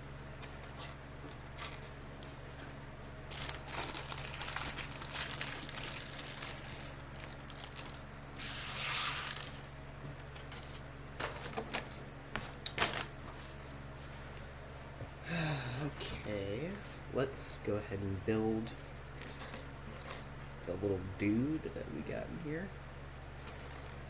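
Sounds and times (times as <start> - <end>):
plastic bags crinkling: 3.3 - 9.6, 23.4 - 24.0
plastic pieces clicking and clattering: 23.4 - 24.0.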